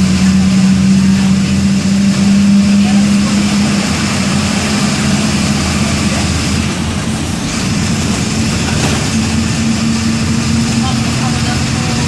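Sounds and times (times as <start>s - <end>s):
bus diesel engine running: 0.0s - 12.0s.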